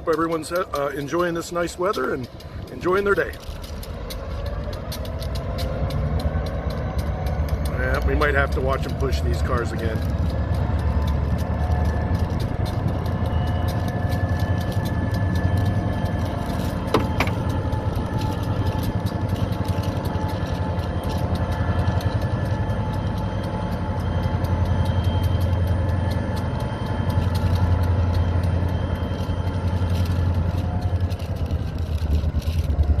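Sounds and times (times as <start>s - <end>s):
diesel locomotive engine drone: 0.0s - 33.0s
turbocharger whine: 0.0s - 33.0s.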